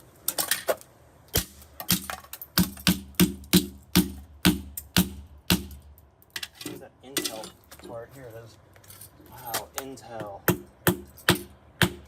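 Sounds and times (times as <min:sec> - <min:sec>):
sharp cracking strikes: 0:01.3 - 0:06.1.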